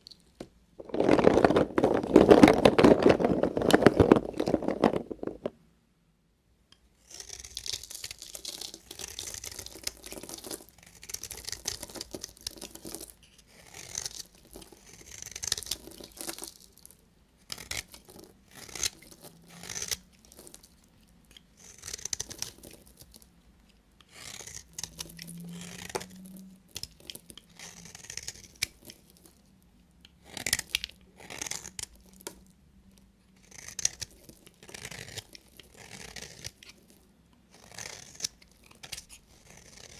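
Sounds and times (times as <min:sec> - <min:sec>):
knife cutting through soap: 0:30.2 - 0:32.2, 0:33.4 - 0:36.9, 0:37.5 - 0:39.9.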